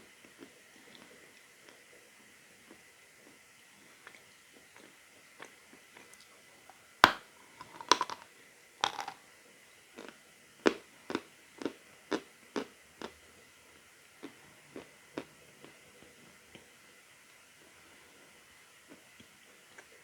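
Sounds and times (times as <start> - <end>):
crunchy chewing: 7.0 - 8.2, 8.8 - 9.2.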